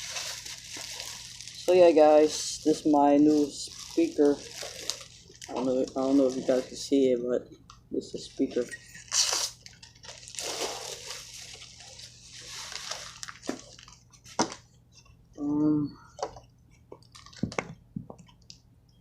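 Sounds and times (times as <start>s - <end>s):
packaging crinkling and rustling: 0.0s - 7.1s, 8.4s - 14.7s, 17.0s - 17.8s.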